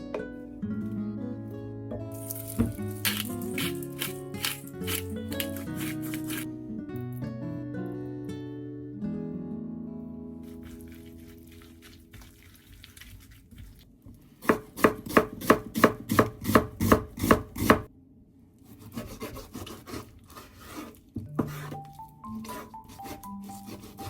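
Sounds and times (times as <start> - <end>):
knife scraping and rustling: 2.2 - 6.5, 18.7 - 24.0
knife chopping on cutting board: 14.4 - 17.9, 18.7 - 21.8, 22.4 - 24.0.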